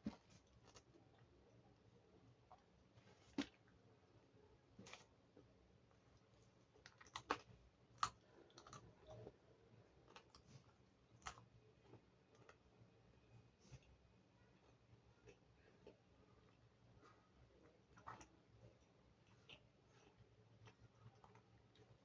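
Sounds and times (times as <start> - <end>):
chewing pizza: 6.0 - 22.0.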